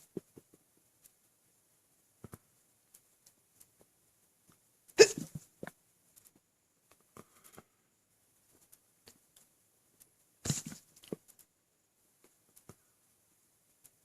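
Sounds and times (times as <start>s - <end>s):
faint clicks: 2.2s - 5.0s, 5.6s - 7.7s, 8.5s - 10.2s, 10.8s - 11.6s, 12.2s - 12.9s, 13.7s - 14.0s
man hiccuping: 5.0s - 5.3s.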